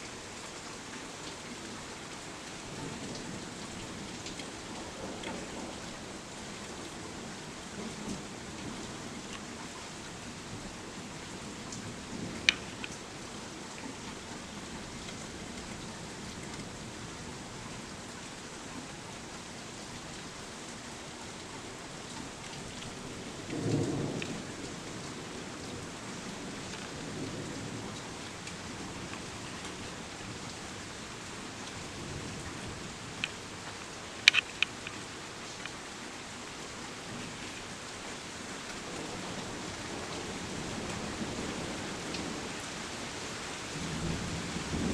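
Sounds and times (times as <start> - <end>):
steady rain falling: 0.0 - 44.9
low rumble of thunder: 2.6 - 17.7, 22.5 - 33.2, 38.8 - 42.9, 43.7 - 44.9
sharp clicks: 34.2 - 35.0.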